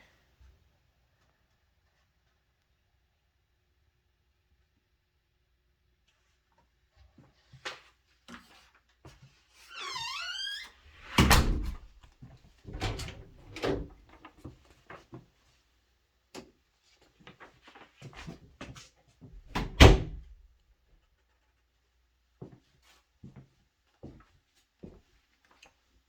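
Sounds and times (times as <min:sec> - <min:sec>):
door hinges squeaking: 0:09.7 - 0:12.0.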